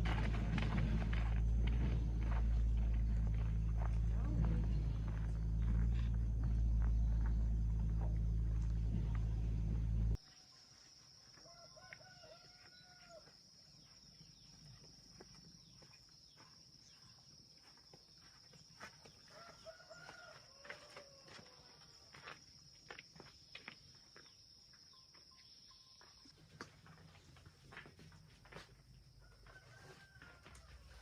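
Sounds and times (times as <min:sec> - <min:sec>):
loud low hum: 0:00.0 - 0:10.2
rooster crowing: 0:11.2 - 0:13.4, 0:19.2 - 0:21.8, 0:29.2 - 0:31.0.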